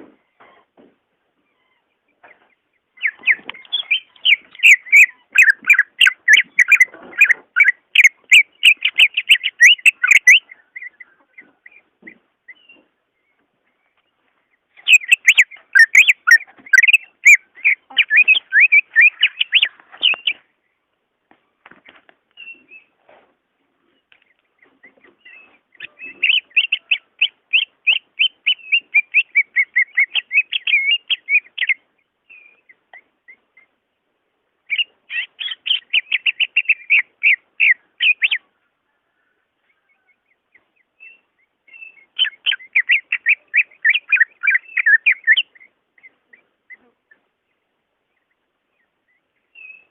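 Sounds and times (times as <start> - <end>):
bird singing high chirping notes: 3.0 - 11.1, 14.8 - 20.4, 25.2 - 32.8, 41.0 - 46.1.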